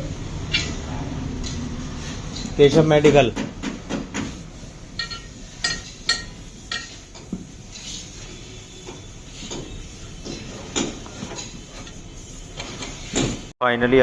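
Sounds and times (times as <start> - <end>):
metallic clinks on tyre: 0.5 - 0.8, 4.9 - 7.1.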